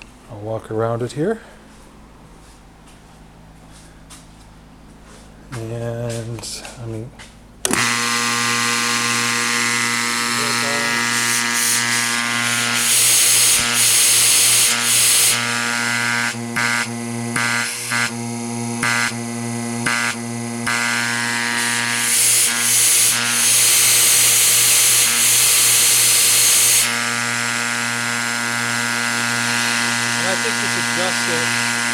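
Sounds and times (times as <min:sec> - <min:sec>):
electric motor hum: 0:07.6 - 0:31.9.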